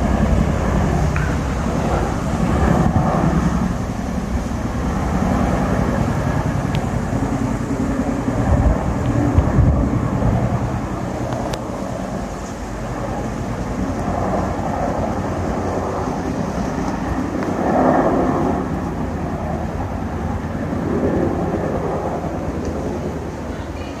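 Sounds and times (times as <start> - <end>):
helicopter rotor and engine rumble: 0.0 - 24.0.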